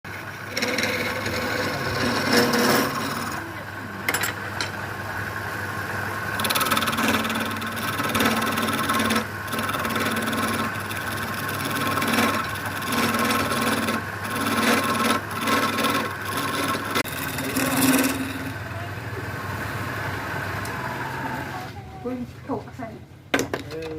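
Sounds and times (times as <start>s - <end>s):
steady hum: 0.1s - 23.3s
tool rasping wood: 0.2s - 3.6s, 6.4s - 18.6s.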